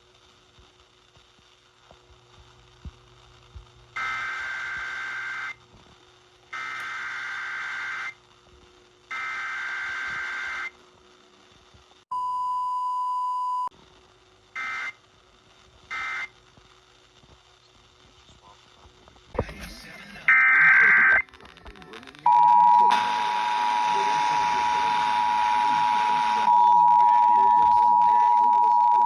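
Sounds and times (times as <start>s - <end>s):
warbling digital data tones: 19.4s - 29.0s.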